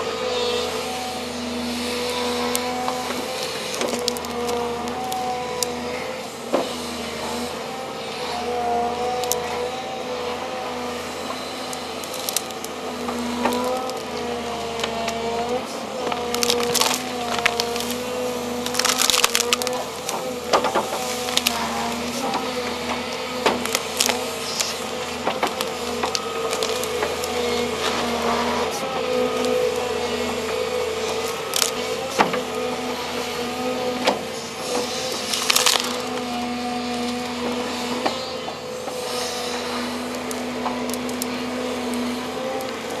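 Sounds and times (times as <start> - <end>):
excavator engine and hydraulics: 0.0 - 43.0
tree roots cracking and snapping: 2.0 - 5.9, 9.0 - 9.6, 11.6 - 32.9, 34.7 - 37.6, 39.9 - 43.0.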